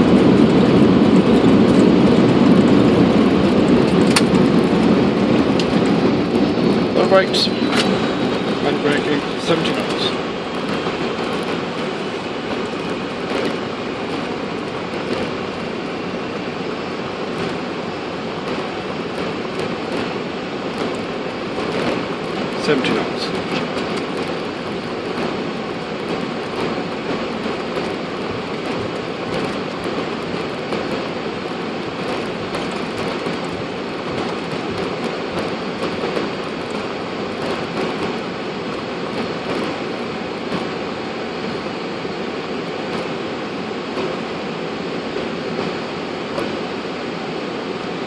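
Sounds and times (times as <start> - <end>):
airplane cockpit rumble and rushing: 0.0 - 48.0.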